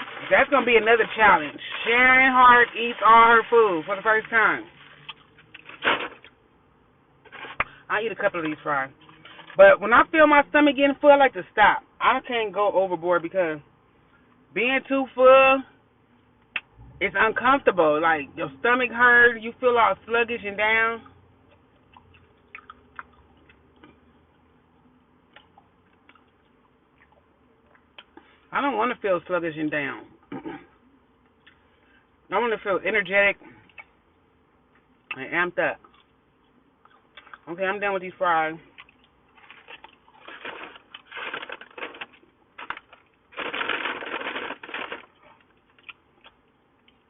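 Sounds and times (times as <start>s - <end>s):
person chewing fries: 21.8s - 24.0s, 25.4s - 28.2s, 35.8s - 36.2s, 36.8s - 37.4s, 38.7s - 47.0s
paper packaging crumpling: 39.4s - 45.2s.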